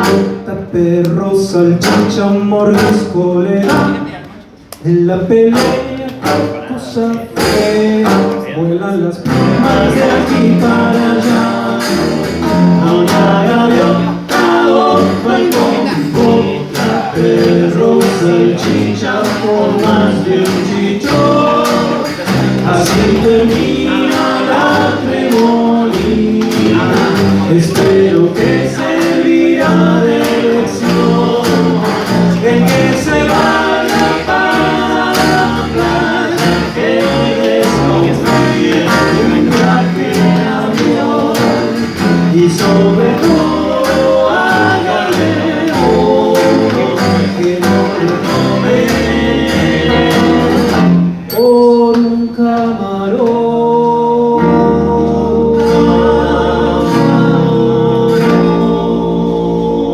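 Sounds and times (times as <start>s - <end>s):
tuba: 0.0s - 0.7s, 9.2s - 51.3s
guitar: 0.0s - 59.9s
small swing band playing: 0.0s - 59.9s.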